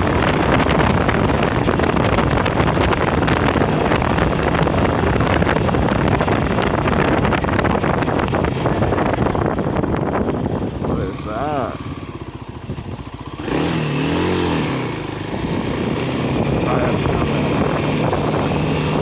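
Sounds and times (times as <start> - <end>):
moving vehicle running noise: 0.0 - 19.0
wind buffeting microphone: 0.0 - 19.0.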